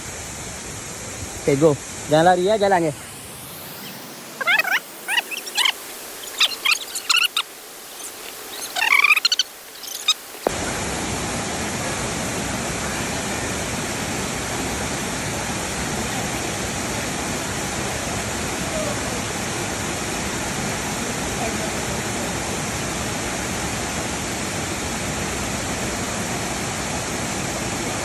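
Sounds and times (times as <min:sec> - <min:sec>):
waterfall rushing: 0:00.0 - 0:28.0
chirping animal calls: 0:03.7 - 0:10.3.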